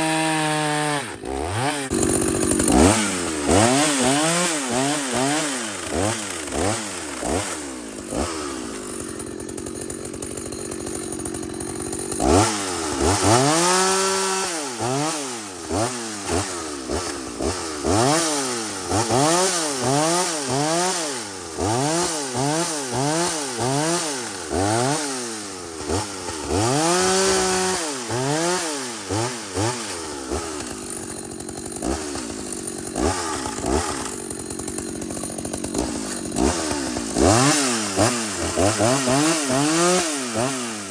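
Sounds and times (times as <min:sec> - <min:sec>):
chainsaw engine revving: 0:00.0 - 0:40.9.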